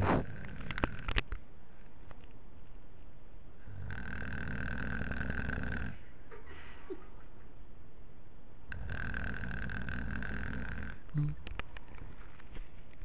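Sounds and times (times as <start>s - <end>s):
man snoring: 3.6s - 6.0s, 8.7s - 11.4s.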